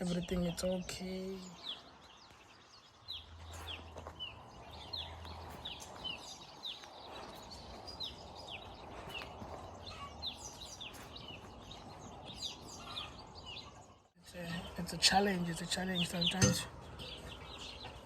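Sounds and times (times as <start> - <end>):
chicks peeping: 3.1 - 14.0.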